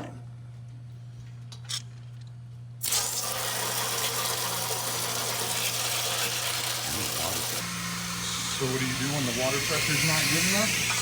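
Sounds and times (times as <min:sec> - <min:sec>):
power washer spraying: 0:02.8 - 0:11.0.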